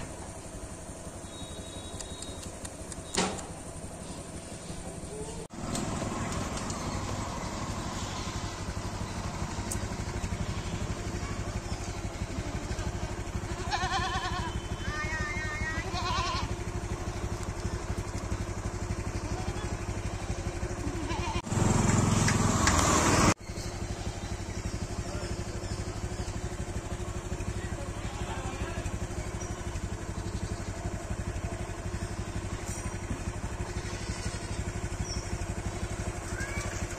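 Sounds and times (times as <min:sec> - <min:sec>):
motor running: 0:00.0 - 0:36.9
animal bleating: 0:12.4 - 0:16.6, 0:20.8 - 0:21.5, 0:33.7 - 0:34.6.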